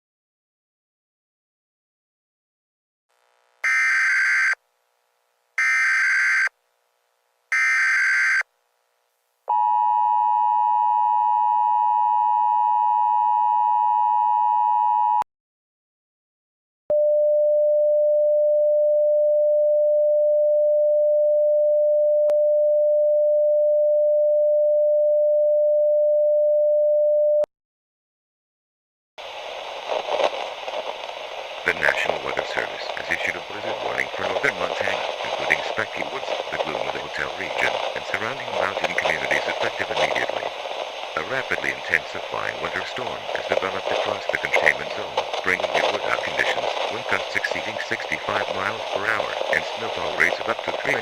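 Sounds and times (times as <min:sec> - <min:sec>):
buzzy data bursts: 0:03.6 - 0:04.6
two-tone attention signal: 0:03.6 - 0:04.6.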